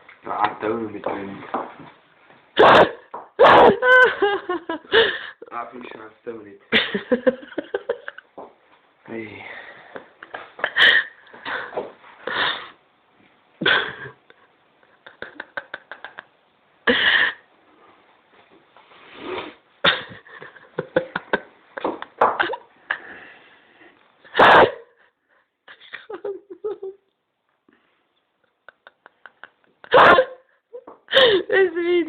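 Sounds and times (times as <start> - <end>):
person hiccuping: 2.6 - 3.7.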